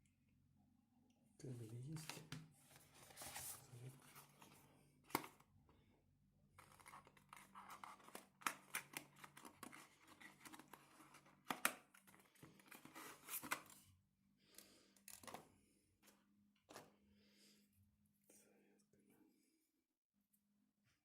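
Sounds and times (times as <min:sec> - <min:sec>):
packaging crinkling and tearing: 0:06.6 - 0:13.8.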